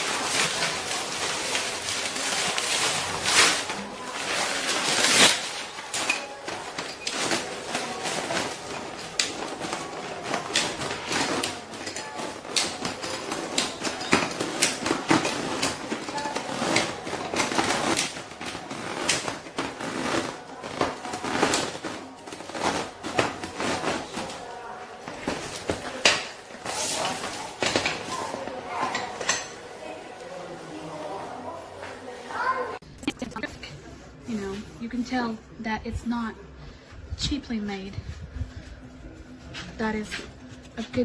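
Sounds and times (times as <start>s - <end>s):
fabric rustling: 0.0s - 30.0s.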